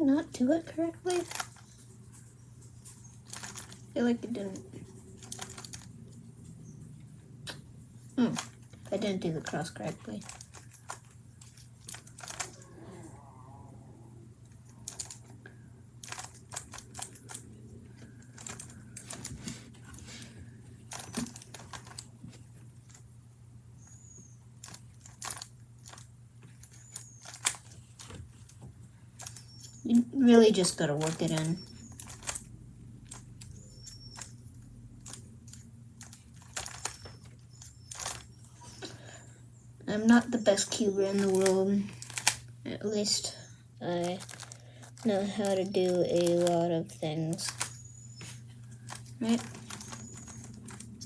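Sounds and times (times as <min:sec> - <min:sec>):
plastic puzzle cube clicking: 0:03.3 - 0:03.8, 0:05.2 - 0:05.9, 0:14.8 - 0:15.3, 0:16.0 - 0:17.4, 0:18.2 - 0:19.4, 0:31.0 - 0:32.4, 0:35.0 - 0:37.3, 0:41.2 - 0:42.4
plastic cube clicks and clacks: 0:18.2 - 0:19.4.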